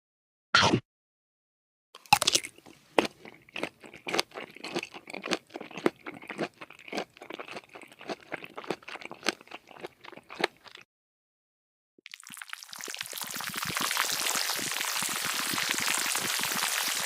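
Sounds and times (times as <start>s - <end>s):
repeated crunching with crackling: 2.0s - 10.8s.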